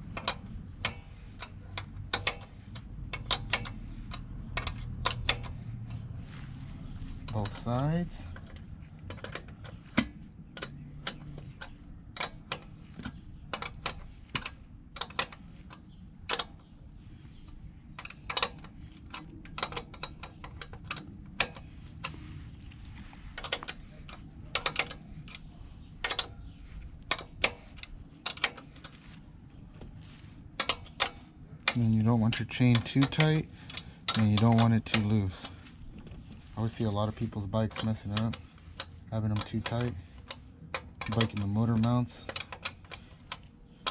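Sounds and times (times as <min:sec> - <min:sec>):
ratchet wrench clicking: 0:00.0 - 0:06.0, 0:30.6 - 0:35.6, 0:36.6 - 0:43.9.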